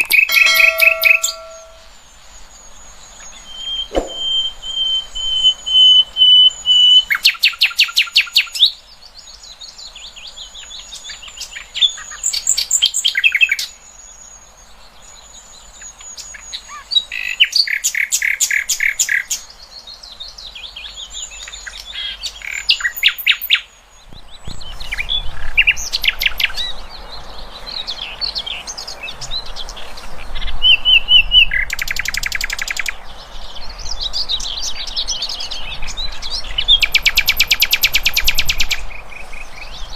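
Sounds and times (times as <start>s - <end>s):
songbird trills and whistles: 0.0s - 8.7s, 27.6s - 39.9s.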